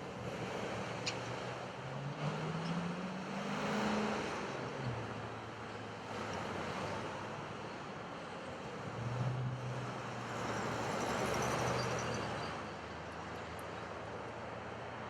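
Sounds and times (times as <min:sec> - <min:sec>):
high-pitched wheel squeal: 0:10.6 - 0:12.7.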